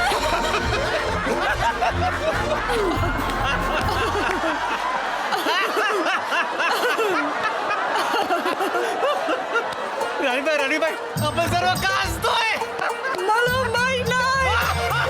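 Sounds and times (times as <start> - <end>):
background film music: 0.0 - 4.8, 9.8 - 15.0
people laughing: 0.0 - 15.0.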